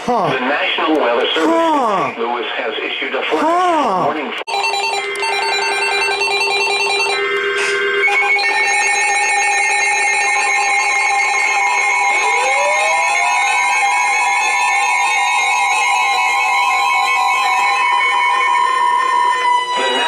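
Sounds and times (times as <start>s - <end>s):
electronic alert tones: 4.5s - 13.4s
tones sliding upward: 12.1s - 13.4s.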